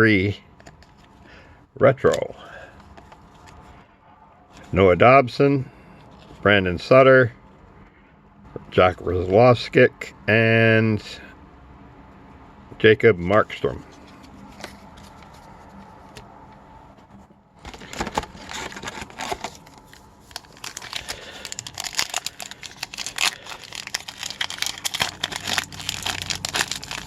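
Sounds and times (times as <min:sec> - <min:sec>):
wrapper crinkling and tearing: 0:17.6 - 0:27.0.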